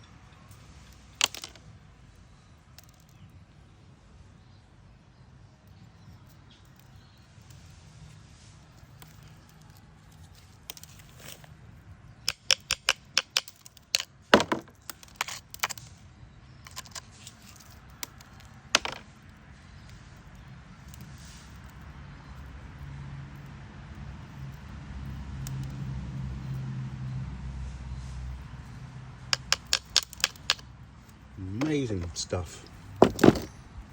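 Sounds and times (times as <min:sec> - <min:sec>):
hard pieces clicking together: 0:00.9 - 0:01.6, 0:12.3 - 0:15.9, 0:16.6 - 0:19.1, 0:29.3 - 0:32.1, 0:33.0 - 0:33.5.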